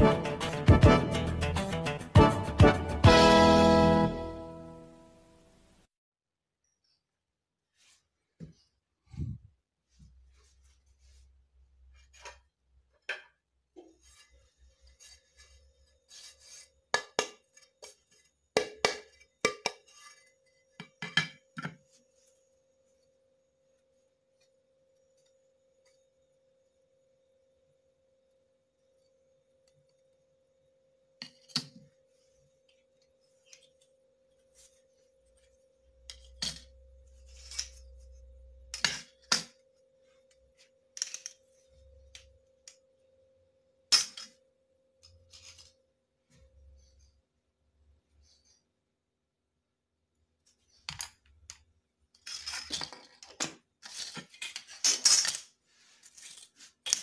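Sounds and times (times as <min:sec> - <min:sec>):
scraping on ceramic tile: 0:13.9 - 0:18.2, 0:37.2 - 0:38.2.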